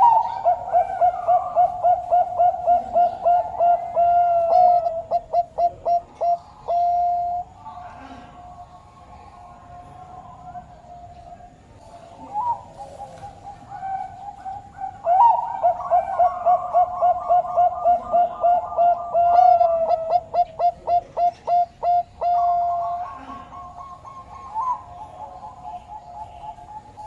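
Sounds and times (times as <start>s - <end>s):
dove cooing: 0.0s - 27.0s.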